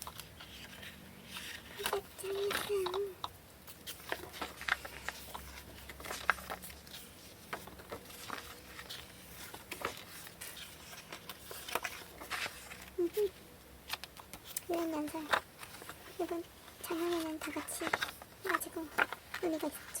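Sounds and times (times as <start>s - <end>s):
cards clicking and tapping: 1.4s - 13.1s.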